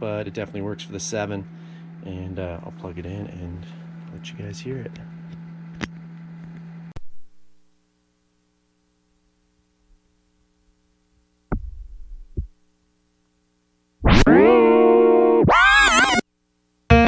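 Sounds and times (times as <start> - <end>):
faint mains hum: 0.0 - 17.0
handling thumps: 11.5 - 12.6
low thumps: 11.5 - 12.6
loud electronic music: 15.4 - 16.2.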